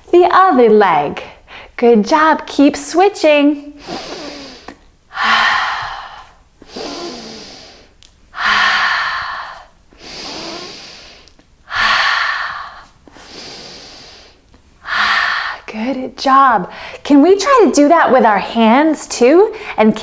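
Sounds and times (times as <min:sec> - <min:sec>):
woman breathing hard: 0:03.8 - 0:15.7, 0:16.7 - 0:17.0.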